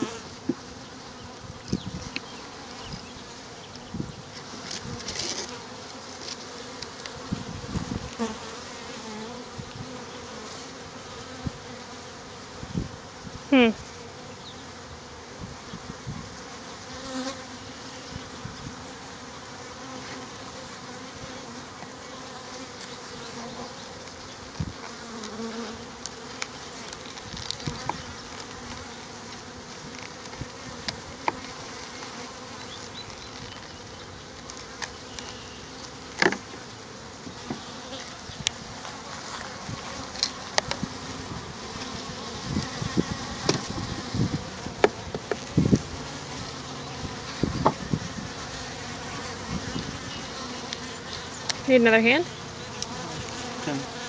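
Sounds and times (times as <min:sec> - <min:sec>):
honeybees buzzing: 0:00.0 - 0:54.0.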